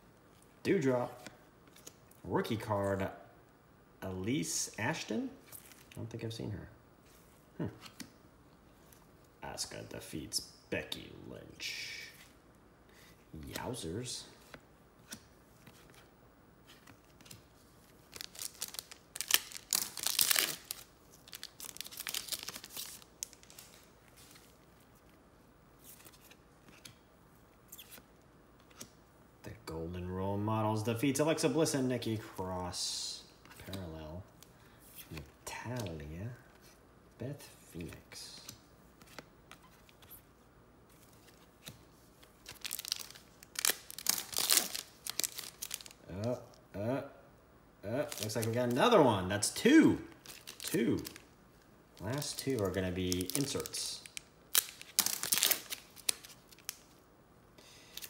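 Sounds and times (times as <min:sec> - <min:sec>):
plastic wrapper tearing and crinkling: 0:18.1 - 0:23.8, 0:42.4 - 0:46.0, 0:48.1 - 0:48.7, 0:50.1 - 0:51.3, 0:52.0 - 0:56.9.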